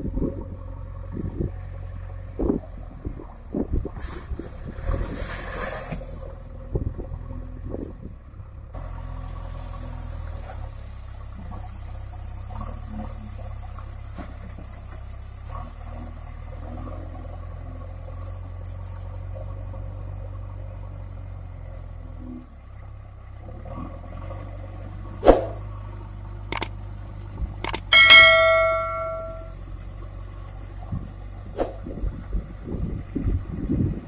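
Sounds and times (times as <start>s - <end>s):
loud metallic clang: 27.7s - 29.5s
sharp knocks: 27.7s - 29.5s.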